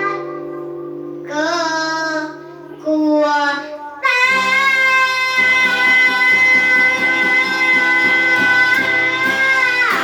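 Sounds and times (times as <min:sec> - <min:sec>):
child singing a high note: 0:00.0 - 0:10.0
strummed guitar: 0:00.0 - 0:10.0.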